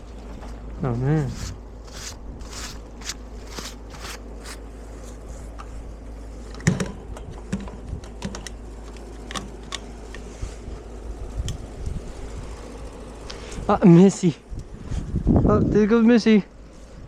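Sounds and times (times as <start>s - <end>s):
footsteps crunching through snow: 1.2s - 5.2s.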